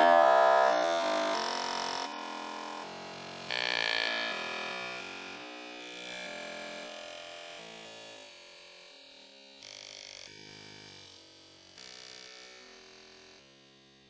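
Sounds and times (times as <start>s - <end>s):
sustained synthesizer chords: 0.0s - 1.8s.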